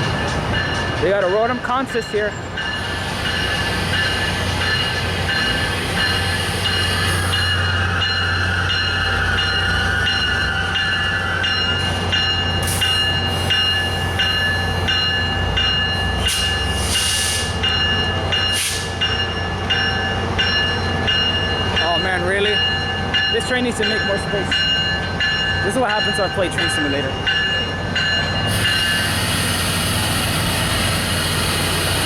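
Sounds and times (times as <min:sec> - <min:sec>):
locomotive engine humming: 0:00.0 - 0:32.0
train bell ringing: 0:00.0 - 0:32.0
air hisses: 0:16.3 - 0:17.6, 0:28.5 - 0:32.0.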